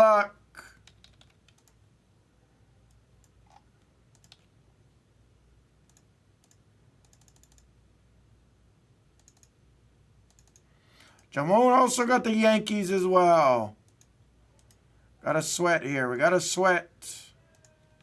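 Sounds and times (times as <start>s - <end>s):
computer keyboard clicks: 0.7s - 1.8s, 3.2s - 4.5s, 5.9s - 7.7s, 9.2s - 9.6s, 10.3s - 11.3s.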